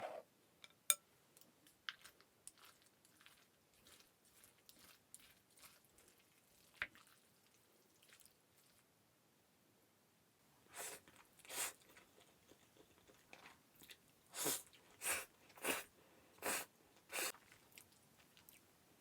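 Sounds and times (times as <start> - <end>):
chewing with soft crunches: 1.4 - 8.9, 11.0 - 15.9, 16.9 - 19.0.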